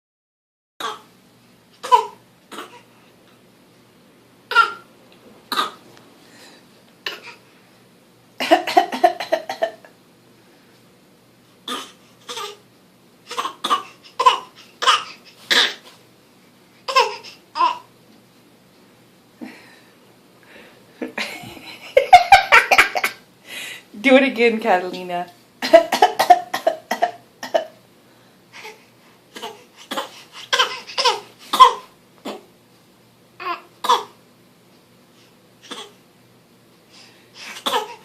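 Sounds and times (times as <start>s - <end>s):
child fake coughing: 1.8s - 2.9s, 4.5s - 4.8s, 8.4s - 9.9s, 11.7s - 12.6s, 13.3s - 15.8s, 25.7s - 27.8s, 29.3s - 32.5s, 33.4s - 34.2s, 35.7s - 36.0s, 37.6s - 38.0s.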